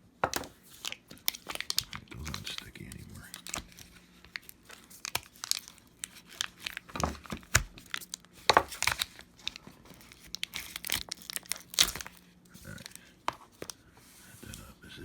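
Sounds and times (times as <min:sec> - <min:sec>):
adhesive tape tearing and crackling: 0:08.8 - 0:13.0.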